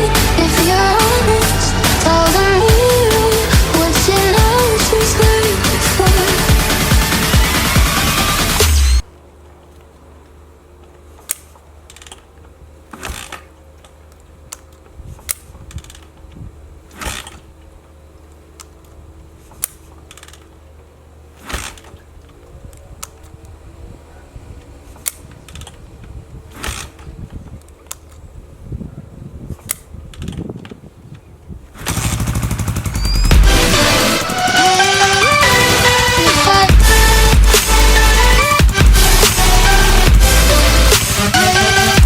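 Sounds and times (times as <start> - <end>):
loud rapidly pulsing sound: 0.0 - 9.1, 31.8 - 42.0.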